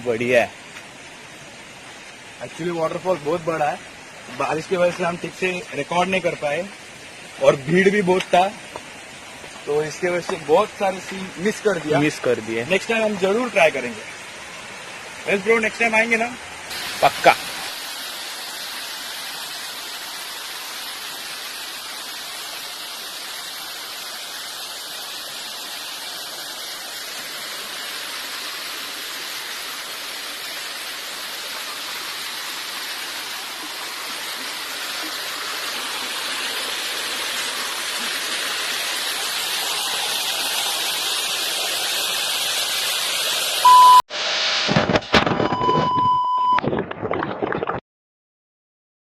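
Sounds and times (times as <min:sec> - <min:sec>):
waterfall rushing: 0:00.0 - 0:43.7
loud electronic beep: 0:43.6 - 0:44.6, 0:45.4 - 0:46.6.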